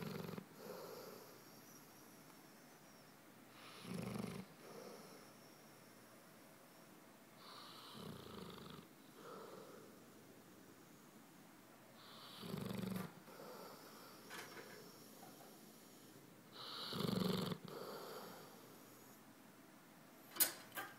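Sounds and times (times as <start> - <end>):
pet snoring: 0.0 - 5.8, 7.4 - 10.0, 12.0 - 19.2.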